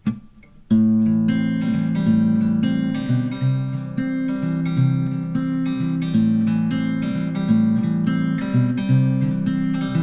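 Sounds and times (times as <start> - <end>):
soft plucked guitar notes: 0.0 - 10.0.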